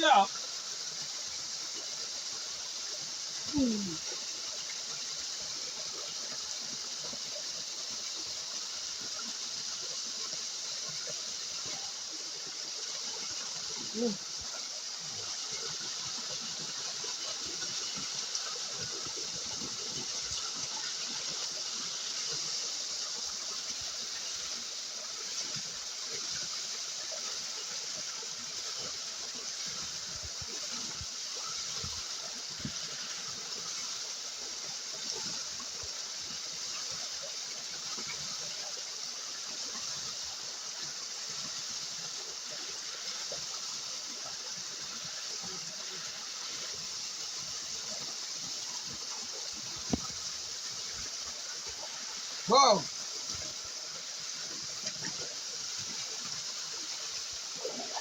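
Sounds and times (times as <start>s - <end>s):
river water rushing: 0.0s - 8.3s, 29.9s - 58.0s.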